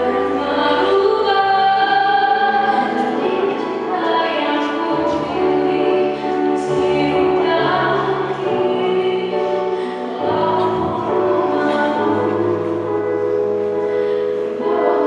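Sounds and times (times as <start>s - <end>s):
choir singing in harmony: 14.4s - 15.0s.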